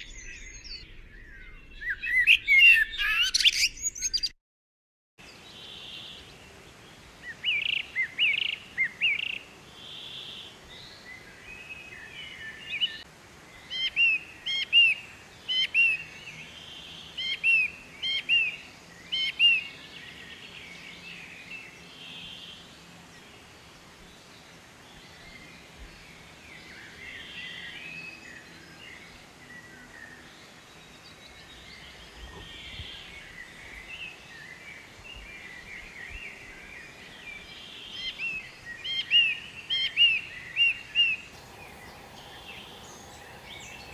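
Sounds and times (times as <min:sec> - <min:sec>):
birds chattering calls: 0:41.3 - 0:43.9
sharp bird chirps: 0:41.4 - 0:43.9.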